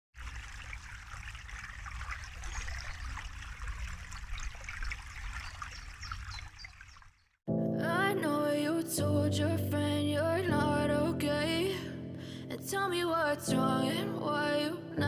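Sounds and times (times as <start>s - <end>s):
water trickling and splashing: 0.1s - 7.4s.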